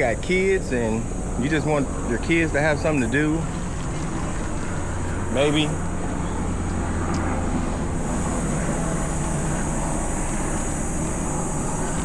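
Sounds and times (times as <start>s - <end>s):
engine rumble: 0.0s - 12.0s
high hiss: 0.0s - 12.0s.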